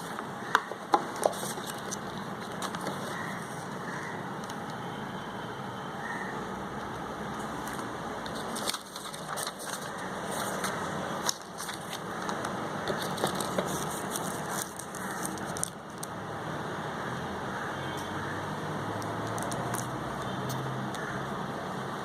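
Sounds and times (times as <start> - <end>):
packaging clicks and crackles: 0.0 - 3.8, 7.6 - 16.2, 19.0 - 20.0
steady background hum: 0.0 - 20.2.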